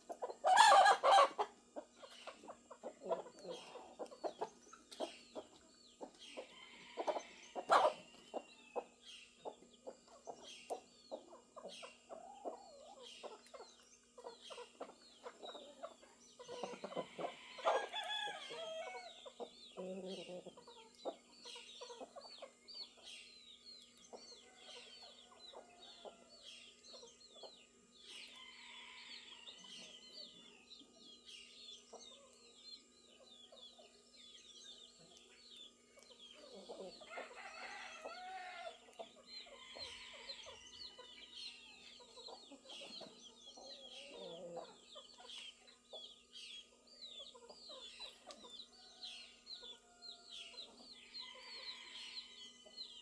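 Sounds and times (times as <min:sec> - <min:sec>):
chickens clucking: 0:00.0 - 0:53.0
small birds chirping: 0:00.0 - 0:53.0
rooster crowing: 0:17.3 - 0:19.1, 0:37.1 - 0:38.8.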